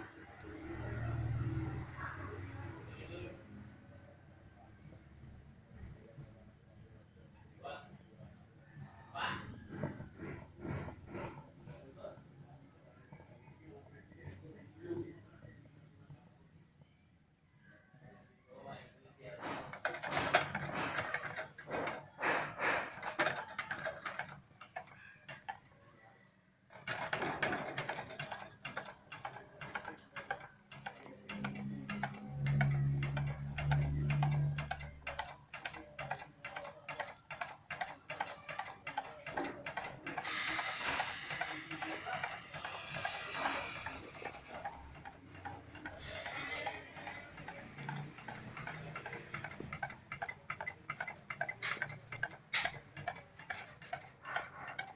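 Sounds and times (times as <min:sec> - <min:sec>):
stirling engine clicking: 0:26.7 - 0:54.9.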